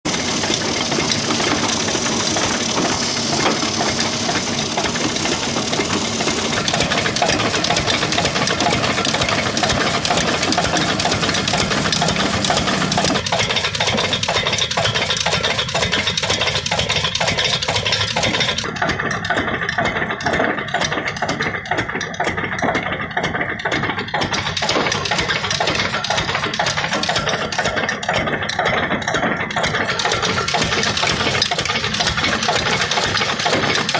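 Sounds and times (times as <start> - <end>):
lathe running: 0.1 - 18.6, 29.6 - 33.9.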